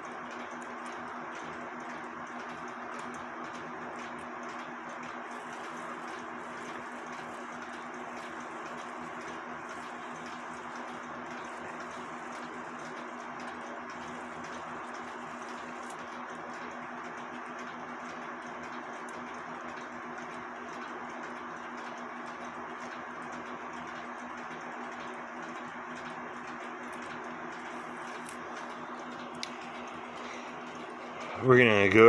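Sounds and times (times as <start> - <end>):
low steady hum: 2.4 - 16.4.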